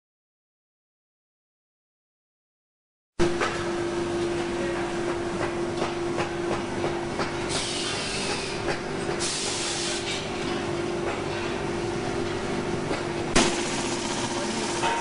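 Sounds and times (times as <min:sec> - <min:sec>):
stitching machinery humming: 0:13.3 - 0:15.0.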